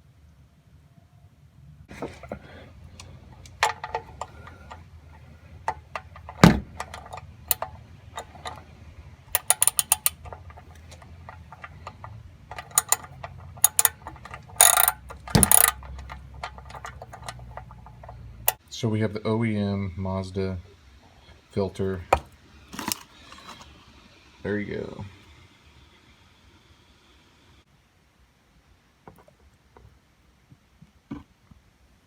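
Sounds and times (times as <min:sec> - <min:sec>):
hand tools clicking on metal: 0:02.1 - 0:08.6, 0:09.3 - 0:18.6
rapid ratchet clicking: 0:06.0 - 0:08.6, 0:09.4 - 0:18.6.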